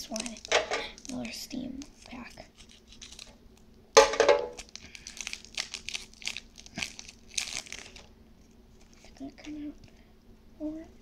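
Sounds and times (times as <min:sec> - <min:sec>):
foil pack ripping: 0:00.0 - 0:03.3, 0:04.6 - 0:08.1
foil wrapper crinkling: 0:00.0 - 0:03.4, 0:04.5 - 0:08.1.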